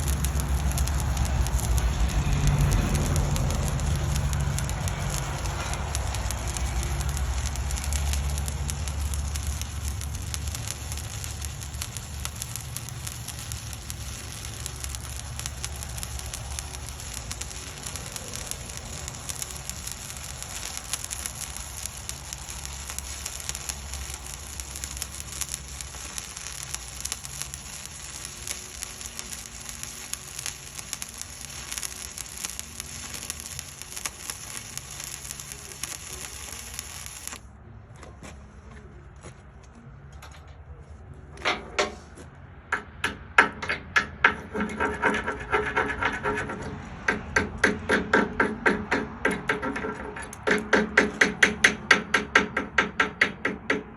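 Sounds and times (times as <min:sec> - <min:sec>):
welding arc crackling: 0:00.0 - 0:37.5, 0:42.7 - 0:53.9
low hum: 0:00.0 - 0:37.8.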